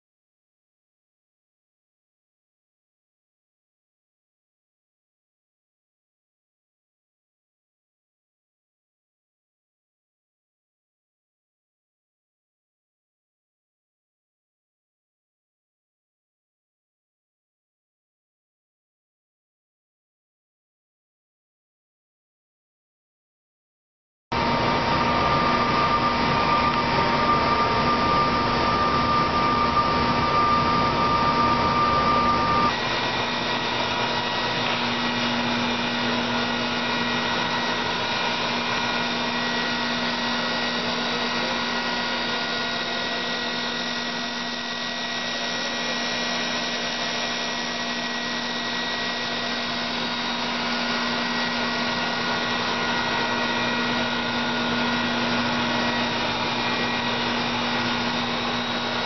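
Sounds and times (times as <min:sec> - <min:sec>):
small motor whirring: 0:24.4 - 0:59.0.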